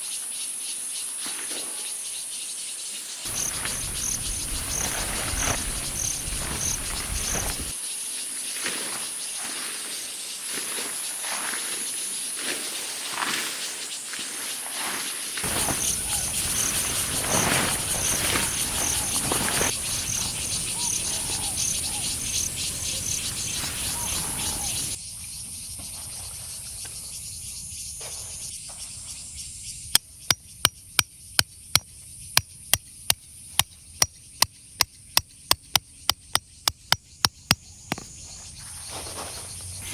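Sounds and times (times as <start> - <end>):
night insects trilling: 1.8 - 8.5, 15.4 - 30.8
sharp evenly spaced clicks: 34.8 - 38.0.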